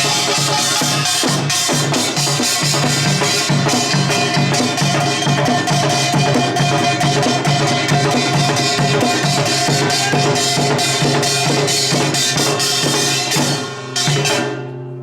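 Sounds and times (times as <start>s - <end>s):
percussion ensemble fast rhythm: 0.0s - 14.7s.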